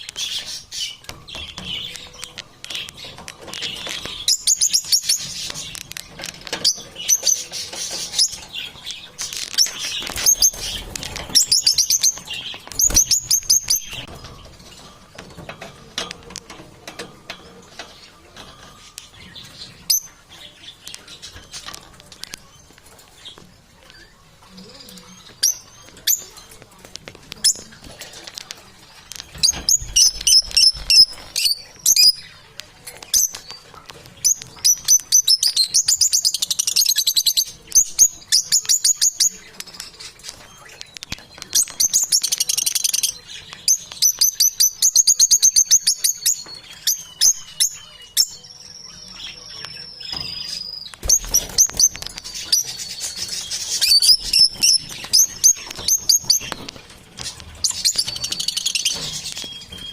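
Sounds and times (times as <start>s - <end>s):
birds chirping in trills: 0.0s - 59.9s.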